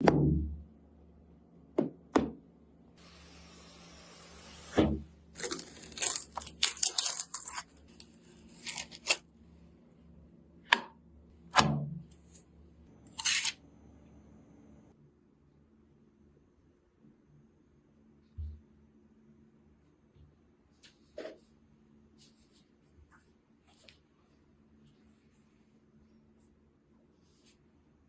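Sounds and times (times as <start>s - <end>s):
steady hiss: 3.0s - 4.7s
plastic packaging crinkling: 5.3s - 9.2s.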